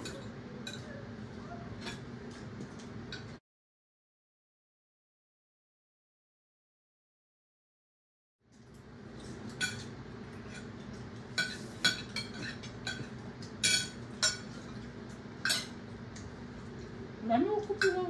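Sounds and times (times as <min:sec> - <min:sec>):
cutlery and dishes clinking: 0:00.0 - 0:00.9, 0:01.8 - 0:03.4, 0:09.2 - 0:15.8, 0:17.6 - 0:18.0
low steady hum: 0:08.5 - 0:18.0.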